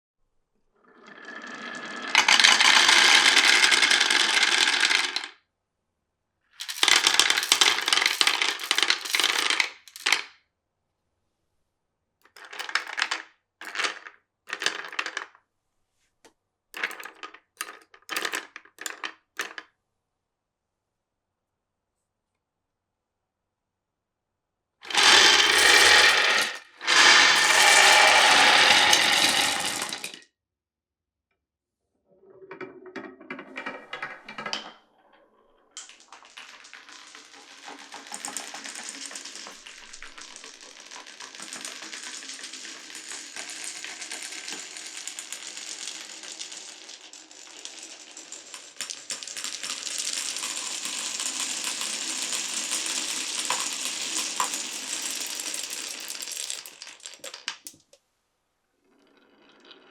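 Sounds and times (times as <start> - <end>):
marbles rattling on wooden track: 1.0 - 5.4, 6.6 - 10.3, 12.2 - 15.4, 16.8 - 19.7, 24.8 - 30.2, 35.7 - 58.0, 58.9 - 59.9.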